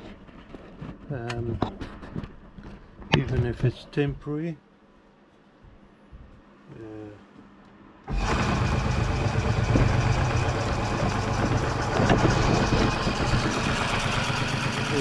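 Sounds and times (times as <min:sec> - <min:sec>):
electric bandsaw running: 0:08.1 - 0:15.0.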